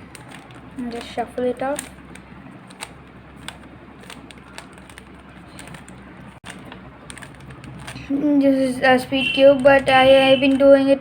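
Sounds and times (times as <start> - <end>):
plastic puzzle cube clicking: 0.1 - 8.0.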